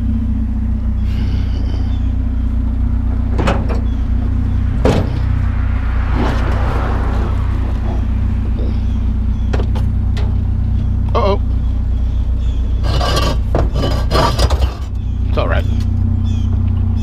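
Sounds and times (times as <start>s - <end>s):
truck engine running: 0.0s - 17.0s
sharp knocks: 4.8s - 5.3s.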